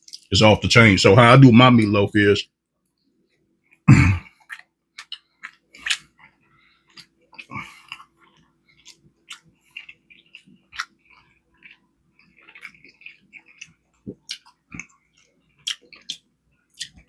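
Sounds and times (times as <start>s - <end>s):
chewing with mouth clicks: 3.7s - 17.0s.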